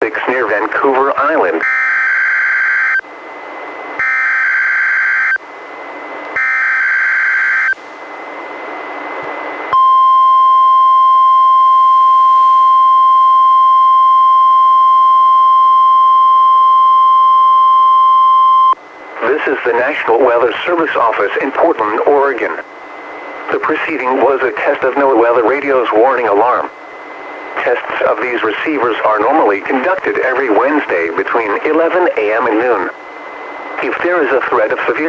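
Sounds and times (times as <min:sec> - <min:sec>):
radio hiss: 0:00.0 - 0:01.6, 0:19.1 - 0:35.0
steady warning alarm tone: 0:01.2 - 0:09.1, 0:09.7 - 0:27.8.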